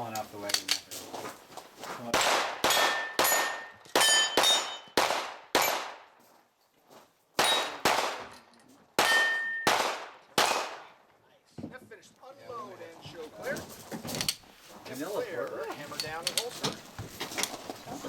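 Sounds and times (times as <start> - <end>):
pistol shots: 2.1 - 6.1, 7.4 - 8.3, 9.0 - 10.9
ringing steel plates: 2.7 - 5.0, 9.0 - 9.7.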